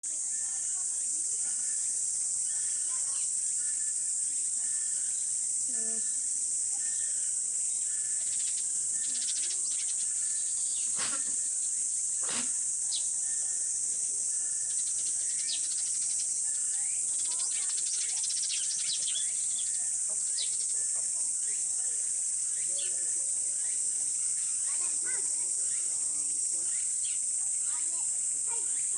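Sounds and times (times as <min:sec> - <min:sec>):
high buzzing of insects: 0:00.1 - 0:28.9
alpaca sneezing: 0:10.9 - 0:11.4, 0:12.2 - 0:12.6.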